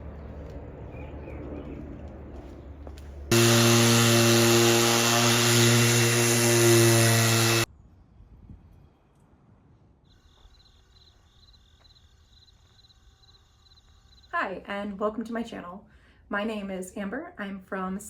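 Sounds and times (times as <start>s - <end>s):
quiet outdoor ambience: 0.0s - 3.3s, 7.7s - 18.0s
electric sander running on wood: 3.3s - 7.7s.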